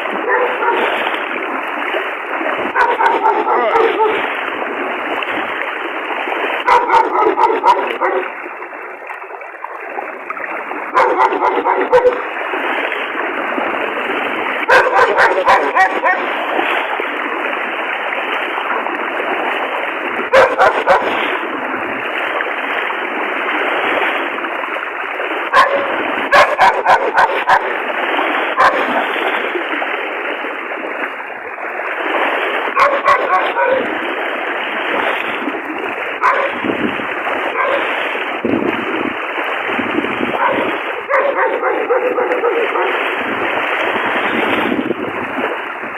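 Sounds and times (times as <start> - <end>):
rushing floodwater: 0.0 - 45.9
dog barking: 0.2 - 1.0, 2.7 - 4.3, 6.6 - 8.4, 10.9 - 12.3, 14.7 - 16.4, 20.3 - 21.2, 25.5 - 27.8, 28.6 - 29.1, 32.8 - 33.9, 36.2 - 36.6, 37.5 - 38.0, 40.4 - 43.1.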